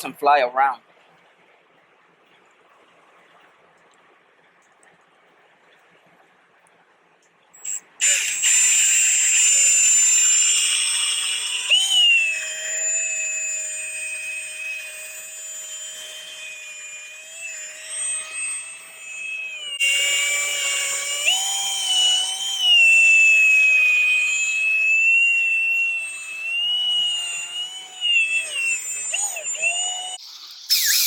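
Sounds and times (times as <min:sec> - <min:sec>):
electric drill motor whining: 0:07.6 - 0:31.0.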